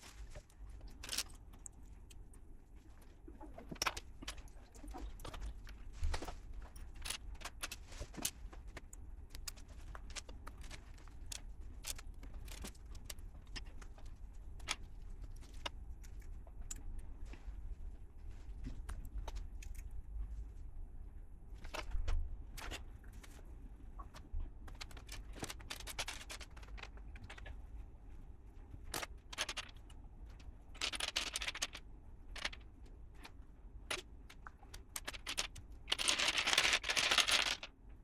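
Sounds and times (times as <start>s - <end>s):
plastic bricks clicking: 0.8s - 2.2s, 28.9s - 29.9s, 30.7s - 37.7s.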